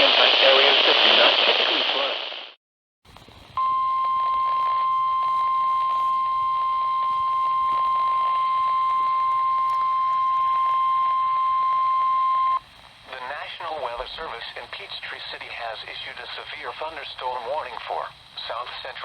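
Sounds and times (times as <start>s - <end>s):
steady high-pitched alarm tone: 3.6s - 12.6s.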